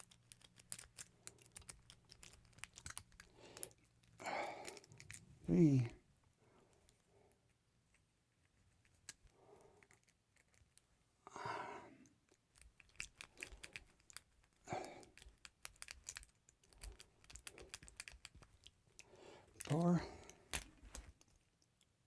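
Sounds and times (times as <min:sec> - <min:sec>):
lock picks clicking in padlock: 0:00.0 - 0:03.3
lock picks scraping: 0:00.0 - 0:05.3.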